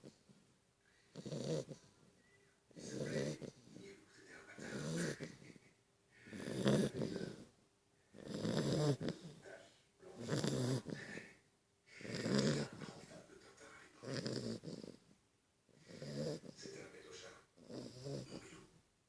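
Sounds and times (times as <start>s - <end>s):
dog snoring loudly: 1.1s - 1.9s, 2.7s - 3.8s, 4.6s - 5.4s, 6.3s - 7.5s, 8.2s - 9.4s, 10.1s - 11.3s, 11.9s - 13.1s, 14.0s - 15.0s, 15.7s - 16.7s, 17.6s - 18.6s.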